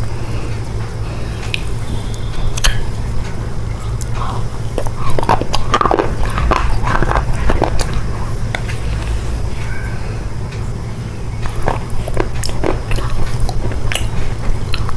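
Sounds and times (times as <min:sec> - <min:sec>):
steady low hum: 0:00.0 - 0:14.9
chocolate crunching while chewed: 0:03.8 - 0:09.4, 0:11.4 - 0:14.9.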